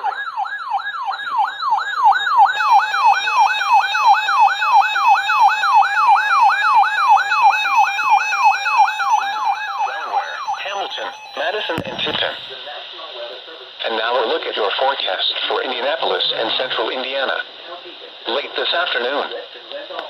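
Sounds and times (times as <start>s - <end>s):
electronic siren alert tone: 0.0s - 12.5s
higher stepping tone: 9.7s - 12.5s.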